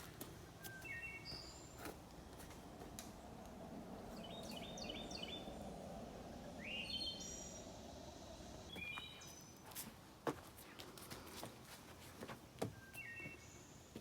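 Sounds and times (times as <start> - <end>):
songbird singing: 0.0 - 2.3, 3.1 - 9.8, 12.6 - 14.0.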